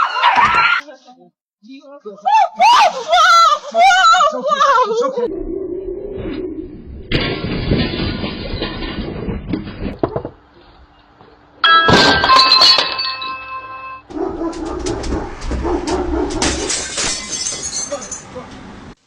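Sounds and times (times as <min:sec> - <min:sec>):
doorbell chiming: 0:11.6 - 0:14.1
dog barking: 0:14.1 - 0:16.7.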